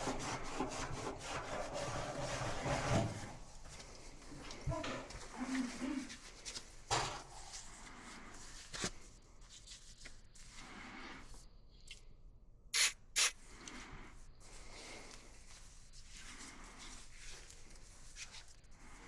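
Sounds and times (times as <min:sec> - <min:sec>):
hands rubbing and scraping parts: 0:12.8 - 0:13.4
short hissing bursts: 0:12.8 - 0:13.4.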